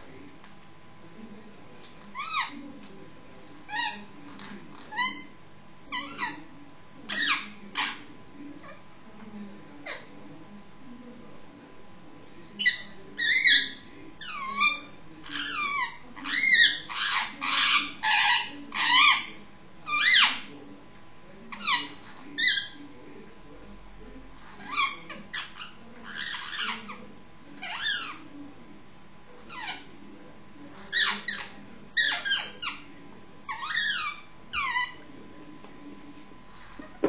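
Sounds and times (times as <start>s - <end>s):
parakeet calling: 2.1s - 2.9s, 3.7s - 6.5s, 7.1s - 8.8s, 12.6s - 20.5s, 21.5s - 22.8s, 24.5s - 28.3s, 29.5s - 30.0s, 30.8s - 35.1s.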